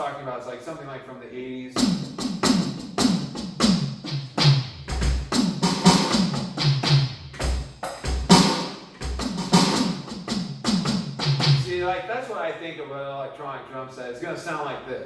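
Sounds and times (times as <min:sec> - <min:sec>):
electronic drum hits: 0:01.8 - 0:11.7.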